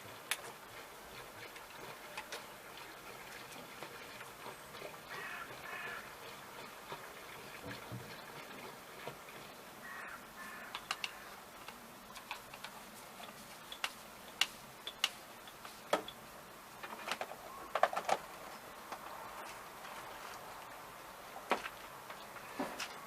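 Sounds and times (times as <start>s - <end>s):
faint steady hiss: 5.1s - 23.0s
small tools clicking and tapping: 10.7s - 16.2s.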